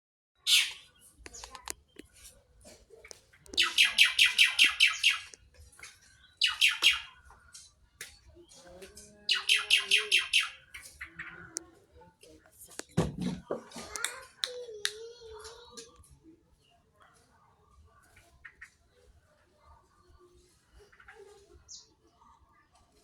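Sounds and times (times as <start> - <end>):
starling calling down-slurred notes: 0.4 - 2.0, 3.0 - 5.5, 6.1 - 7.3, 9.2 - 11.8.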